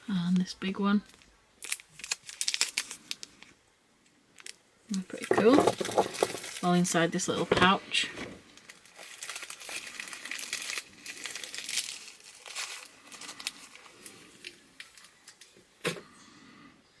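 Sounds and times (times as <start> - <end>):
packaging crinkling: 1.1 - 3.5, 4.4 - 6.8, 8.5 - 15.5.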